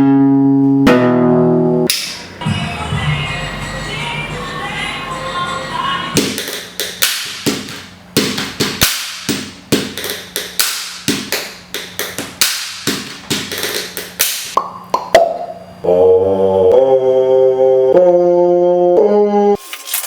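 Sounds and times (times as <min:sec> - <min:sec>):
percussion beat of taps and knocks: 0:01.9 - 0:03.2, 0:06.1 - 0:15.6.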